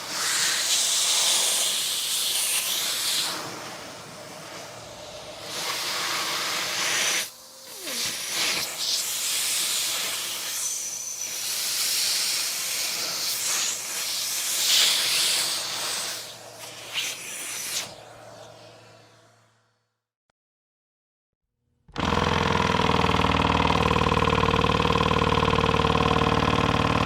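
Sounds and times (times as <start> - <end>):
air compressor hissing: 0.0 - 19.5.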